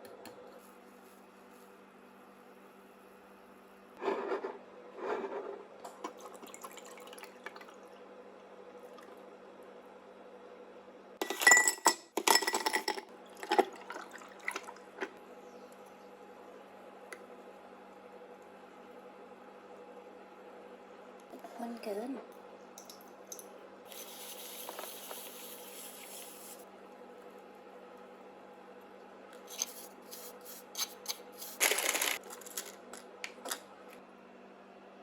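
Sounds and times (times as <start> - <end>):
liquid pouring into glass: 6.0 - 7.9, 13.3 - 14.8.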